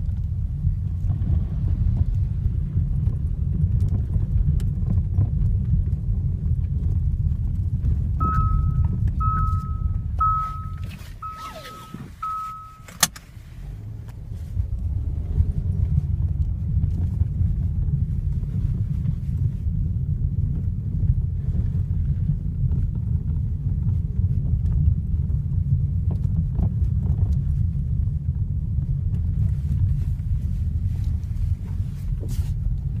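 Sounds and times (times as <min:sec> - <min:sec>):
car driving on rough road: 0:00.0 - 0:33.0
high warning chime beeps: 0:08.2 - 0:13.0.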